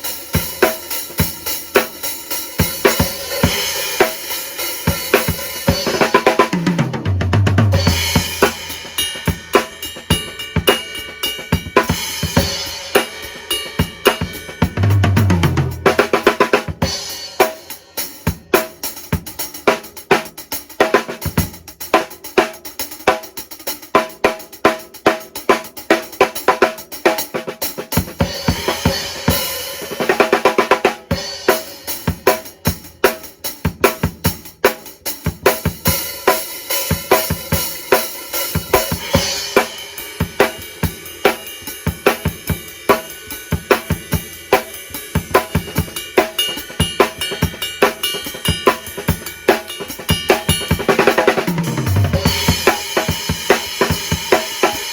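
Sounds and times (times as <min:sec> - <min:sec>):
drum kit groove: 0:00.0 - 0:54.9.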